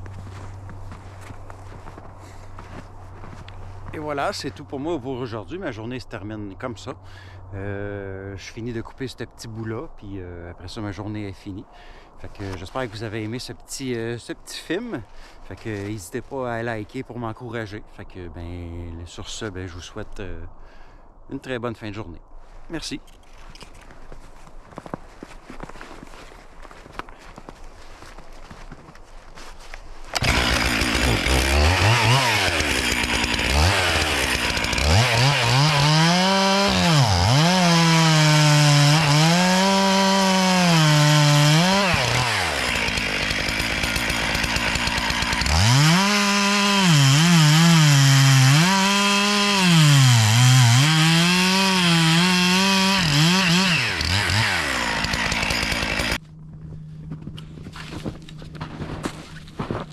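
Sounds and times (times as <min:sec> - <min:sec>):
chainsaw revving: 0:30.2 - 0:56.2.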